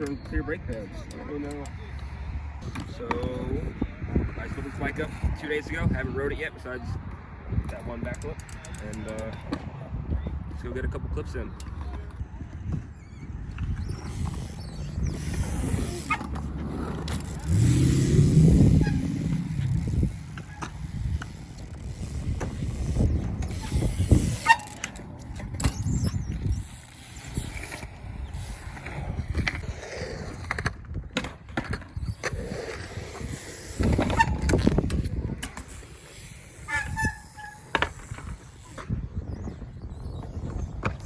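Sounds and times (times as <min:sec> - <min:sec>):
bike tires rolling on concrete: 0:00.0 - 0:41.0
rear hub clicking: 0:08.1 - 0:09.3, 0:12.9 - 0:29.6
short squeaks: 0:11.8 - 0:30.7, 0:31.6 - 0:41.0.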